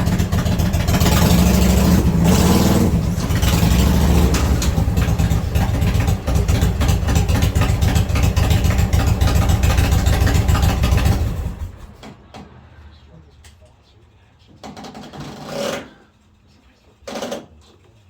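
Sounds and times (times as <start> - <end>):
motorcycle engine running: 0.0 - 11.9.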